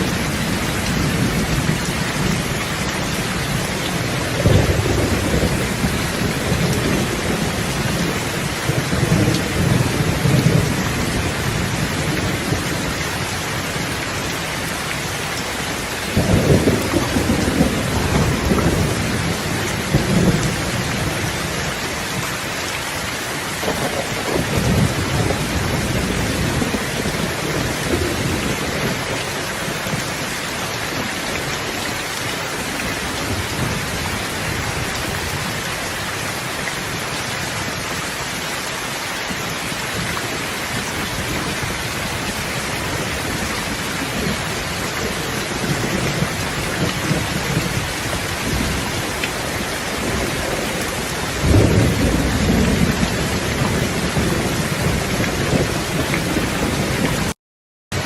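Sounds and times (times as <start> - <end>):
thunder rumbling: 0.0 - 14.0, 15.7 - 21.7, 23.6 - 30.3, 39.3 - 58.0
heavy rain: 0.0 - 58.0.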